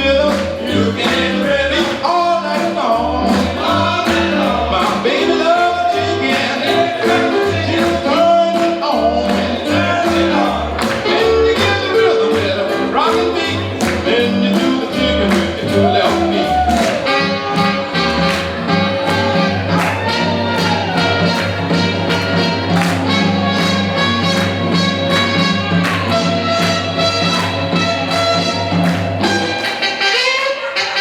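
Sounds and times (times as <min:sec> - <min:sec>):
person singing: 0:00.0 - 0:28.5
walking bass line: 0:00.0 - 0:30.0
rock and roll song: 0:00.0 - 0:31.0.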